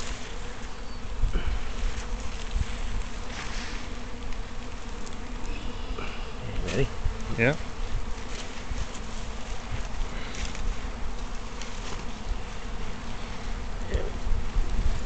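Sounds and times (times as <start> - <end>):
bee swarm buzzing: 0.0 - 15.0.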